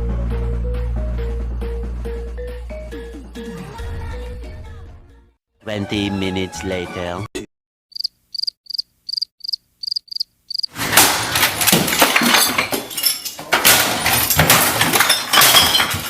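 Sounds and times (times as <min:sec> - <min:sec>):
cricket chirping: 0:07.9 - 0:10.7.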